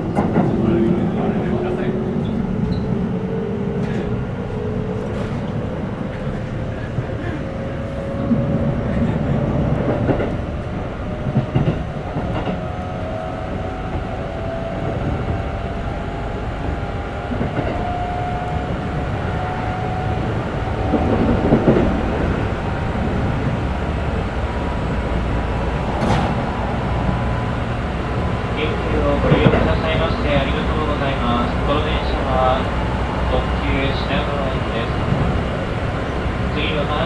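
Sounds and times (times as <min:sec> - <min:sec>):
running gear rumble: 0:00.0 - 0:37.0
wheels clacking at rail joints: 0:00.0 - 0:37.0
train motor whine: 0:19.2 - 0:37.0.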